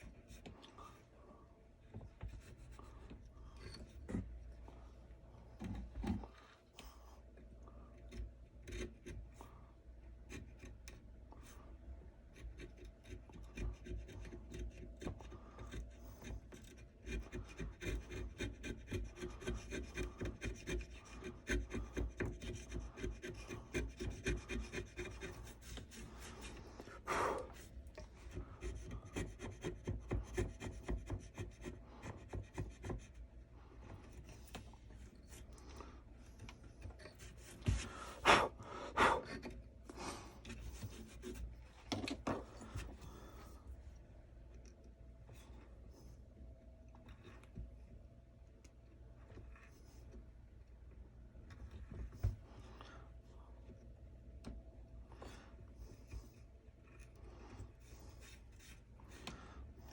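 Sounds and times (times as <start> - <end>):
hand tool scraping wood: 12.4 - 33.1.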